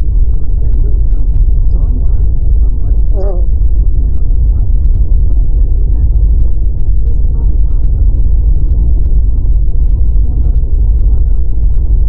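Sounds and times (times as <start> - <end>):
road and engine rumble: 0.0 - 12.0.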